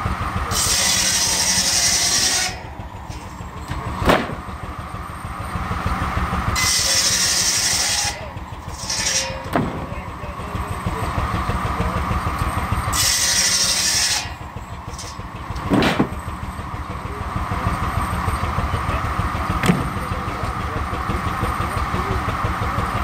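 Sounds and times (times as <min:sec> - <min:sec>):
steam engine mechanical rumble: 0:00.0 - 0:23.0
steam hissing: 0:00.0 - 0:23.0
short knocks: 0:15.5 - 0:16.2.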